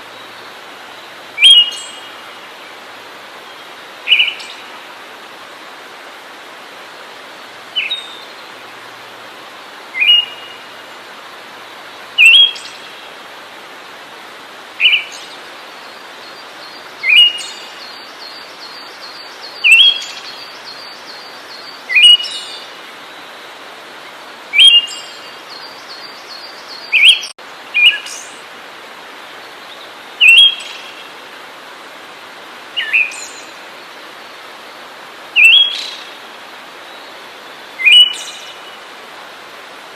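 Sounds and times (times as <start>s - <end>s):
steady hiss: 0.0s - 39.9s
songbird sharp calls: 1.4s - 2.0s, 10.0s - 10.6s, 12.2s - 12.8s, 30.2s - 31.0s, 35.4s - 36.1s, 37.8s - 38.8s.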